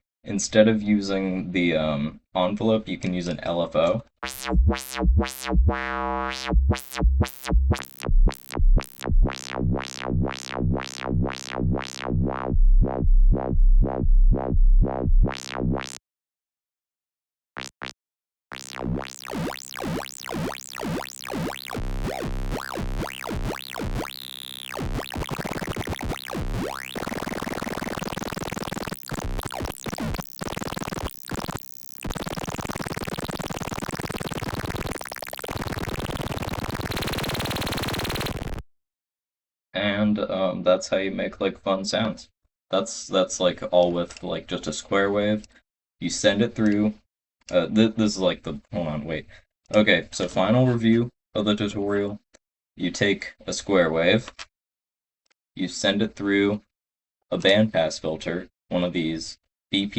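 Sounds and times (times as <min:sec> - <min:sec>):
squelchy synth bass: 0:04.2 - 0:16.0, 0:17.6 - 0:38.6.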